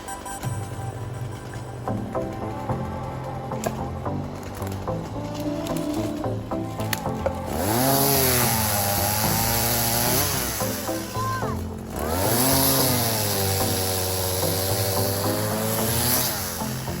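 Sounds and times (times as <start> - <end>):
background music: 0.0 - 17.0
chainsaw revving: 1.8 - 17.0.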